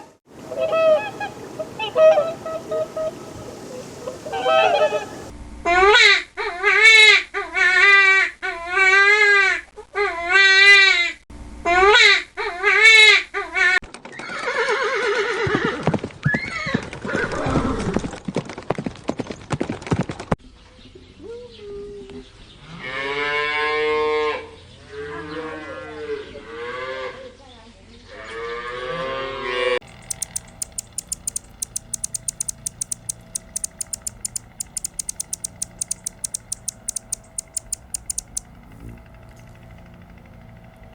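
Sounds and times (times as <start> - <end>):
farm animals calling: 29.8 - 38.4.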